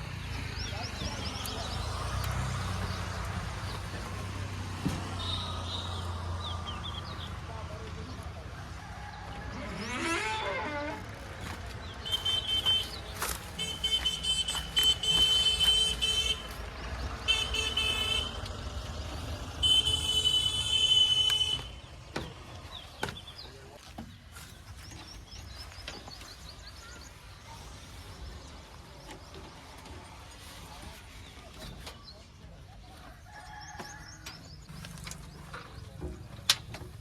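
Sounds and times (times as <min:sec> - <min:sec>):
diesel engine running: 0:11.0 - 0:22.9
vehicle horn blasts: 0:12.0 - 0:16.5, 0:17.2 - 0:18.4, 0:19.6 - 0:21.8.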